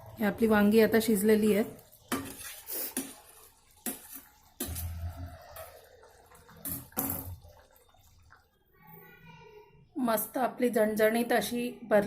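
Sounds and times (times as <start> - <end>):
metal cookware clinking and scraping: 1.9 - 7.8.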